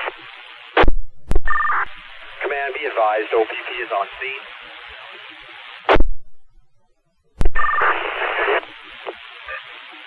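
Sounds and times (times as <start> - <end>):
radio carrier hiss: 0.0 - 6.2, 7.4 - 10.0
radio squelch noise: 0.0 - 6.2, 7.4 - 10.0
radio click: 7.4 - 9.8
warbling data-burst beep: 7.5 - 8.4.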